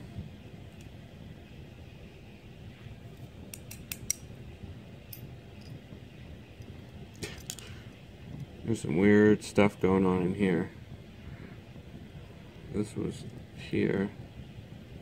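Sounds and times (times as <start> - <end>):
faint low hum: 0.0 - 15.0.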